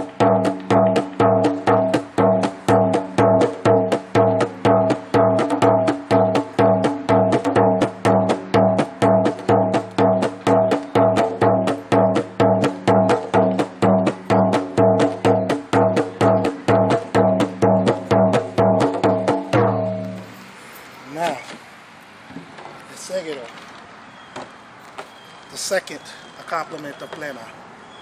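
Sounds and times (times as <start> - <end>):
frame drum rhythm: 0.0 - 20.3.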